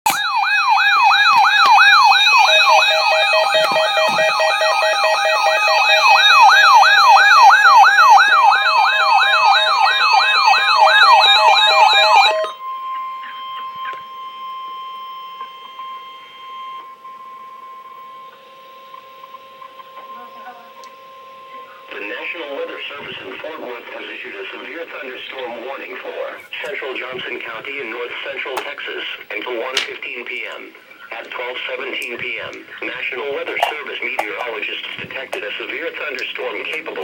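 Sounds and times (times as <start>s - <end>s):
fast wailing alert siren: 0.1s - 26.4s
steady high alarm tone: 0.1s - 37.0s.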